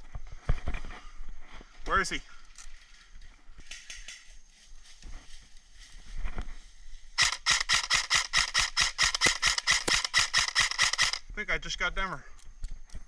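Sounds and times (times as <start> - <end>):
airsoft gun firing full auto: 7.2 - 11.2.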